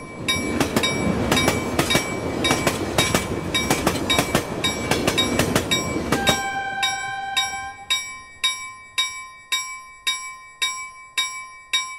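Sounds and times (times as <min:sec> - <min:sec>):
train wheels clattering: 0:00.0 - 0:07.7
railroad crossing bell ringing: 0:00.0 - 0:11.9.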